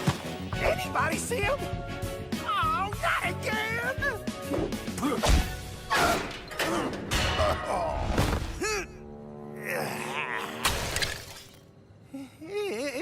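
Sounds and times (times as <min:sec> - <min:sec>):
background music: 0:00.0 - 0:13.0
character grunts and groans: 0:07.6 - 0:10.7.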